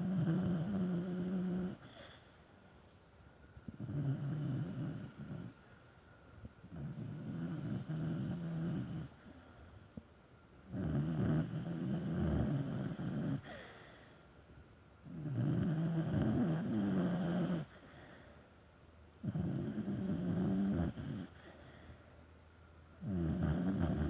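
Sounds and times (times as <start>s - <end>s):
dog snoring: 0.0s - 2.2s, 3.6s - 5.7s, 6.6s - 9.5s, 10.6s - 13.9s, 15.0s - 18.2s, 19.2s - 21.8s, 23.0s - 24.0s.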